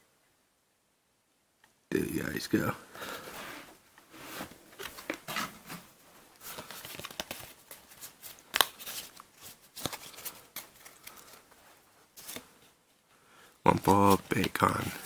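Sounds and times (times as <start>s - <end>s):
foil pack crinkling and snapping: 6.4s - 11.5s.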